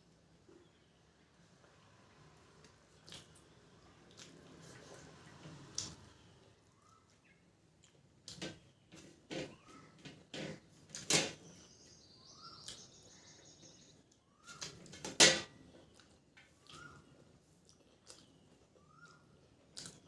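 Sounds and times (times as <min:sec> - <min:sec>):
person chewing food: 0:02.4 - 0:09.7, 0:13.9 - 0:20.0.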